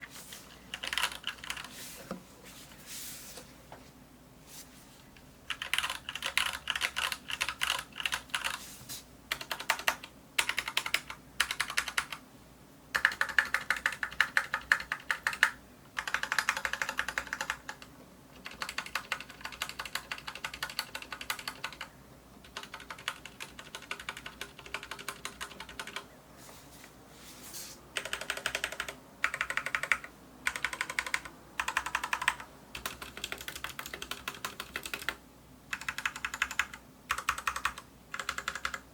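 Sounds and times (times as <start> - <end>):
mechanical keyboard typing: 0.7 - 1.7, 5.5 - 8.6, 9.3 - 12.2, 12.9 - 26.1, 28.0 - 38.9.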